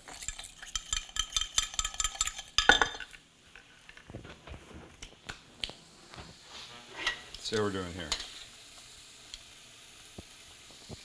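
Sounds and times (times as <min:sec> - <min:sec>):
metal utensil clinking in bowl: 0:00.0 - 0:03.2.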